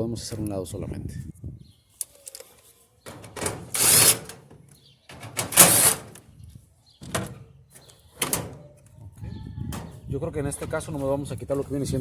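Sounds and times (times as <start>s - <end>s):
sheet metal scraping and sliding: 3.1s - 6.2s, 7.0s - 8.6s.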